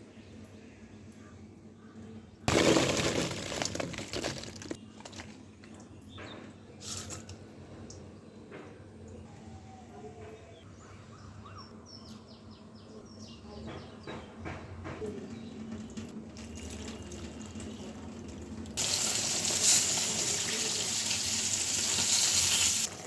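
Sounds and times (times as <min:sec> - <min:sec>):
tap water running: 0:16.3 - 0:23.0.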